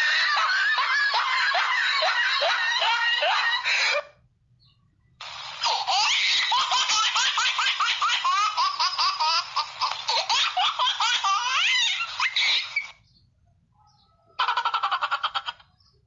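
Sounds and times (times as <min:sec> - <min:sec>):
high-pitched voice laughing: 0:00.0 - 0:04.2, 0:05.6 - 0:12.9.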